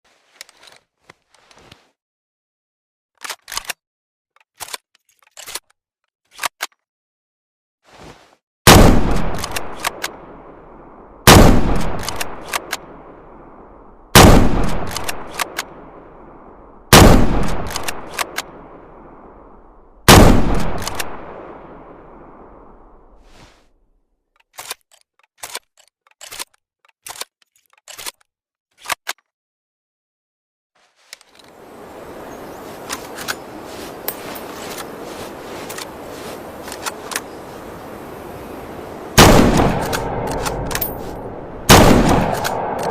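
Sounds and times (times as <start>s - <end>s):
rifle bolt metallic clicks: 9.3s - 10.2s, 11.8s - 12.9s, 14.7s - 15.7s, 17.5s - 18.5s, 20.7s - 21.2s, 39.6s - 42.9s
rifle bolt action clacks: 39.6s - 41.2s.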